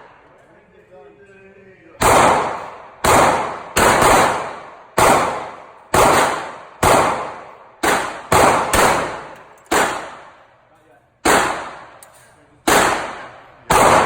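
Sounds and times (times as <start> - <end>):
pistol shots echoing: 2.0 - 10.5, 11.2 - 14.0.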